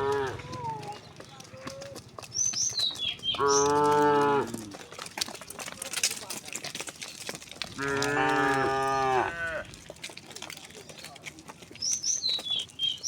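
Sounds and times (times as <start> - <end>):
cattle mooing: 0.0 - 0.8, 3.4 - 4.8, 7.8 - 9.8
bird chirping: 2.3 - 3.8, 11.8 - 13.0.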